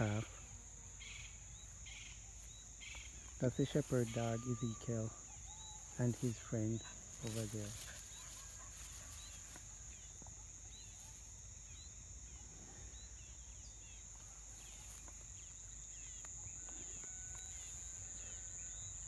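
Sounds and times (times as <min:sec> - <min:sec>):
high-pitched insect drone: 0:00.0 - 0:19.0.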